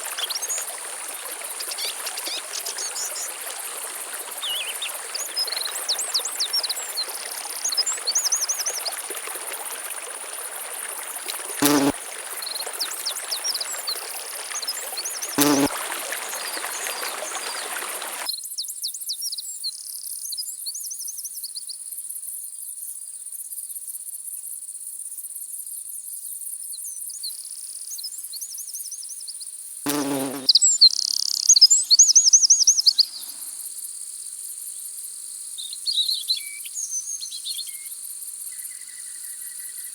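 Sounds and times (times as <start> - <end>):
insects trilling: 0.0 - 18.3, 29.9 - 33.7
rushing water hiss: 0.0 - 18.3
birds chirping: 4.2 - 6.7, 11.6 - 11.9, 12.8 - 18.3.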